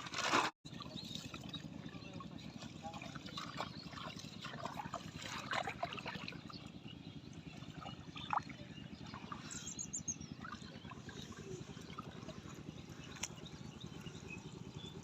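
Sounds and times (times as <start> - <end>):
river water trickling and splashing: 0.1 - 14.9.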